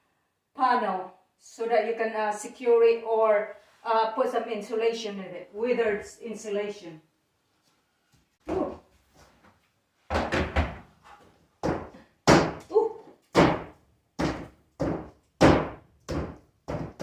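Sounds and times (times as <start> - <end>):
hard knocks on ceiling panel: 11.6 - 12.6, 13.3 - 17.0.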